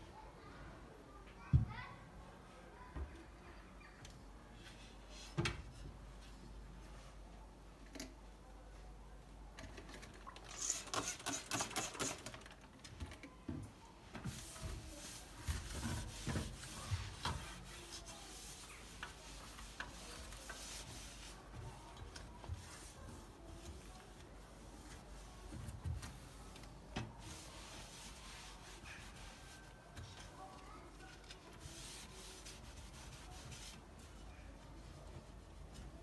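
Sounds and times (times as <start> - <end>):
rubbing or scrubbing: 14.2 - 30.0, 31.1 - 34.2.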